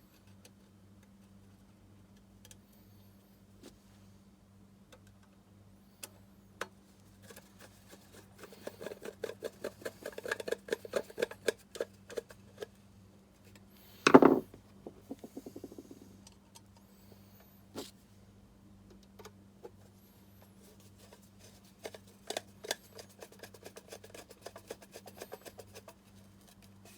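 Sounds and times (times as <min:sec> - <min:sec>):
loud knock: 0:14.1 - 0:15.8.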